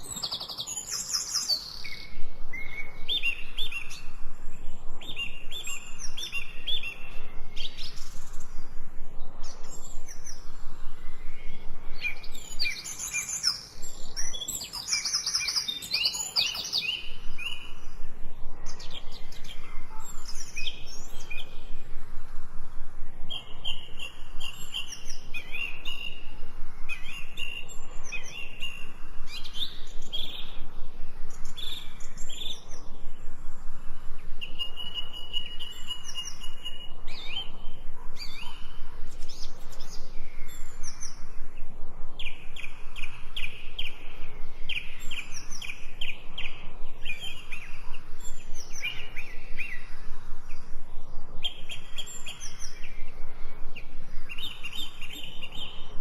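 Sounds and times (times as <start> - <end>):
songbirds chirping and trilling: 0.0 - 56.0.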